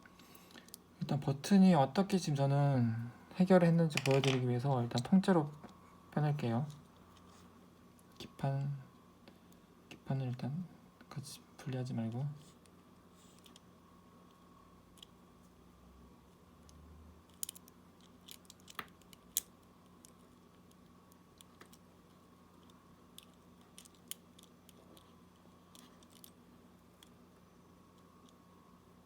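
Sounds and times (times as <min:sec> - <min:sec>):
faint steady hum: 0:00.0 - 0:29.0
tools clicking on small parts: 0:04.0 - 0:04.4, 0:16.7 - 0:20.8.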